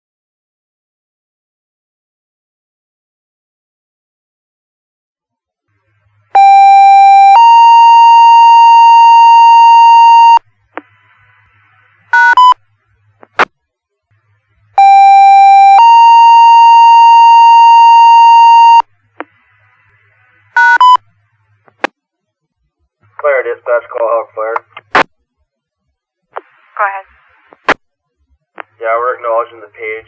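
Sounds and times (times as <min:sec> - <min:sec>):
faint radio static: 0:05.9 - 0:21.9, 0:23.0 - 0:25.1, 0:26.0 - 0:30.0
short radio beeps: 0:06.4 - 0:10.4, 0:12.2 - 0:12.6, 0:14.8 - 0:18.8
two-tone pager tones: 0:06.4 - 0:10.4, 0:12.2 - 0:12.6, 0:14.8 - 0:18.8
radio click: 0:13.2 - 0:13.5, 0:26.4 - 0:27.8, 0:28.6 - 0:28.8.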